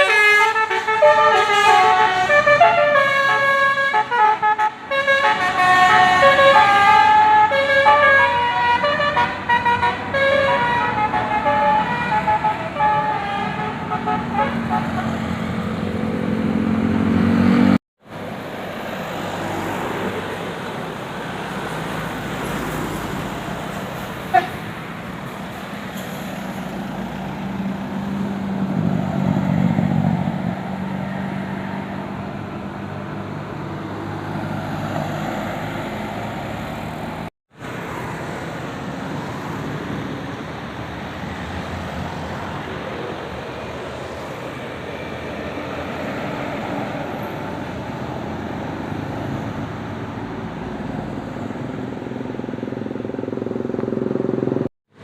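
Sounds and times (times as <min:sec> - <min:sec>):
vehicles driving past: 0:00.0 - 0:55.0
heavy engine passing close: 0:14.6 - 0:55.0.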